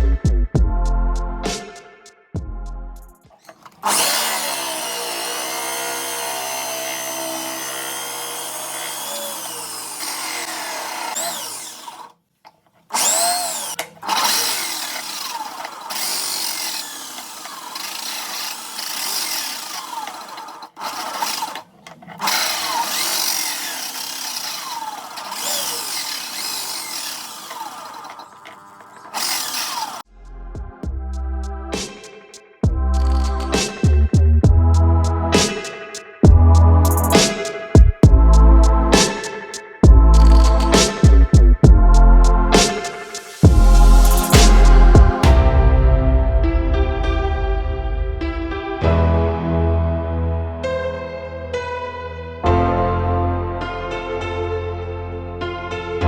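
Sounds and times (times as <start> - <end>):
electric power tool motor: 3.4 - 12.2, 12.8 - 30.1, 33.0 - 33.7, 40.1 - 41.2, 42.6 - 45.4.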